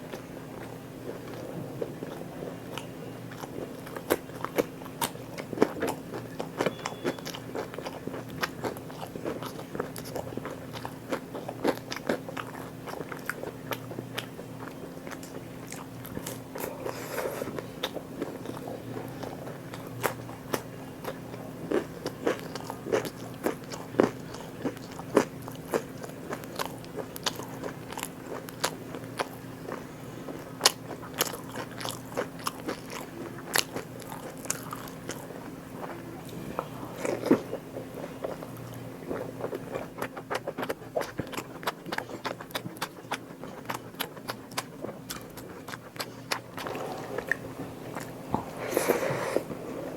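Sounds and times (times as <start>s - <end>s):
faint hum: 0.0s - 49.9s
person chewing crunchy food: 0.0s - 49.9s.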